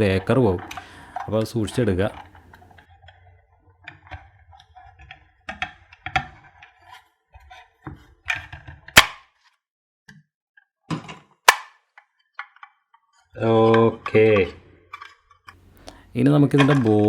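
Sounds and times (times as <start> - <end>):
sharp plastic snaps: 8.9 - 9.3, 11.4 - 11.8.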